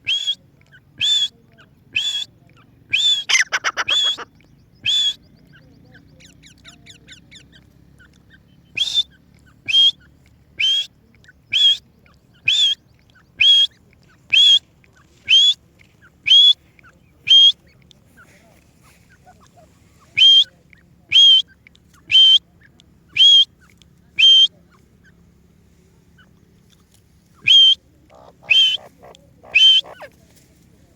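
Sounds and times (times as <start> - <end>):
partridge calling: 0.0 - 25.2, 27.3 - 30.4
faint soft bird twittering: 27.2 - 30.4.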